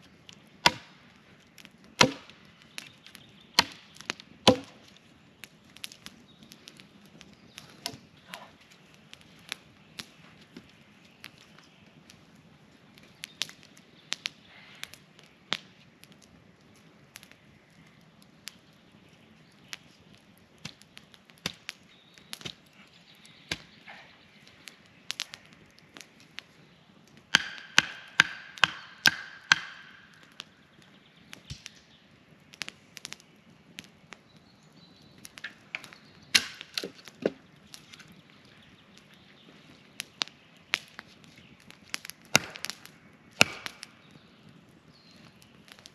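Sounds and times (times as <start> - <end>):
tool chopping wood: 0.6 - 0.9, 2.0 - 2.3, 3.6 - 3.8, 4.4 - 4.8, 27.3 - 30.0, 36.4 - 37.4, 43.4 - 43.8.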